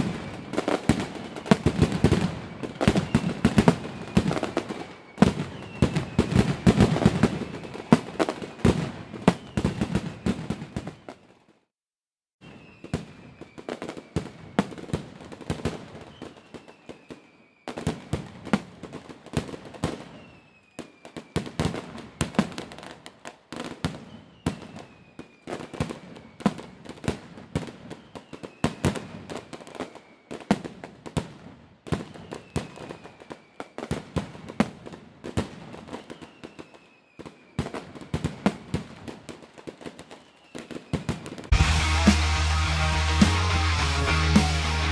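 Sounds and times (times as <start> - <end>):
fireworks popping and banging: 0.0 - 11.3, 30.5 - 41.6
high falling whistle: 41.5 - 44.9.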